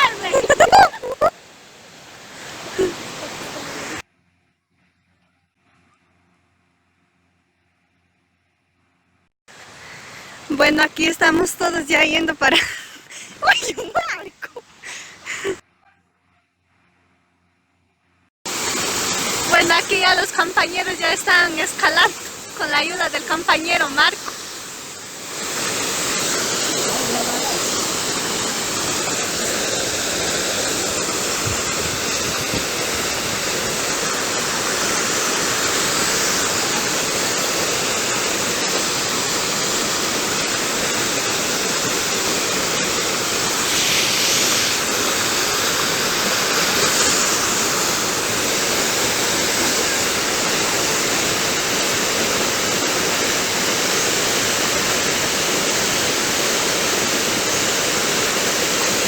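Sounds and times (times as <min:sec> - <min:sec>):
waterfall pouring: 0:18.5 - 0:59.0.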